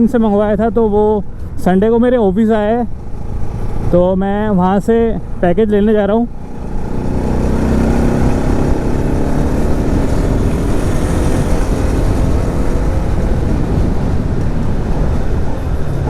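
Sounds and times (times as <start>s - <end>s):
motorcycle engine running: 2.7s - 16.0s
wind rush on microphone: 6.3s - 16.0s.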